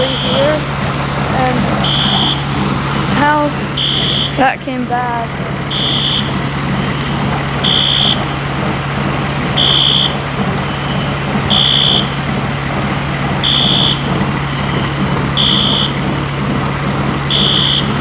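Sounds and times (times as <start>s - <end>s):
fire alarm beeping: 0.0s - 0.6s, 1.8s - 2.4s, 3.8s - 4.4s, 5.7s - 8.2s, 9.6s - 12.2s, 13.4s - 16.0s, 17.3s - 18.0s
constant rushing noise: 0.0s - 18.0s
low hum: 0.0s - 18.0s.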